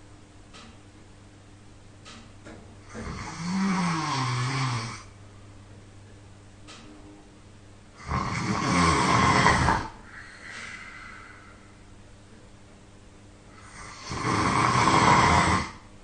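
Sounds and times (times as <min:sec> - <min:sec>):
person snoring loudly: 0:02.9 - 0:05.1, 0:08.0 - 0:10.3, 0:13.5 - 0:15.8
soft breath out: 0:10.0 - 0:11.9.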